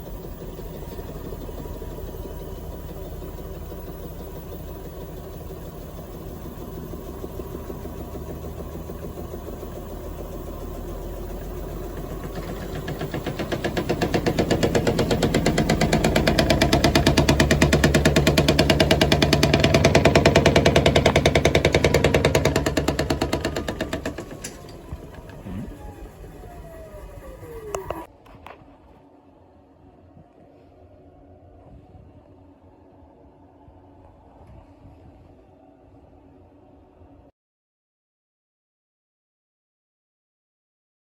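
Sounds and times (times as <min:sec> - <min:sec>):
rapid rhythmic rattling and banging: 0:00.0 - 0:25.3
washing machine spinning: 0:00.0 - 0:28.1.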